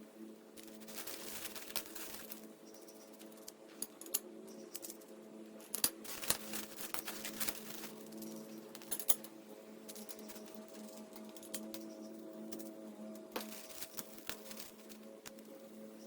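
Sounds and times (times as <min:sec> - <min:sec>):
metal hardware clicks and clinks: 0:02.7 - 0:14.4.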